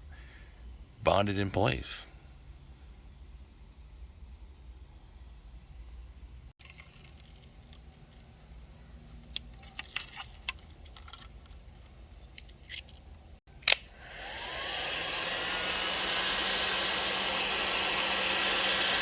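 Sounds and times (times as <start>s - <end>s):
blower switch click: 13.6s - 14.6s
hot-air blower fan whining: 13.6s - 19.0s.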